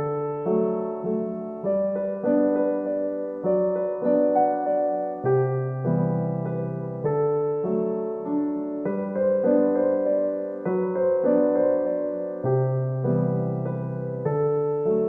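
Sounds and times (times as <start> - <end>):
soft electric piano melody: 0.0 - 15.0.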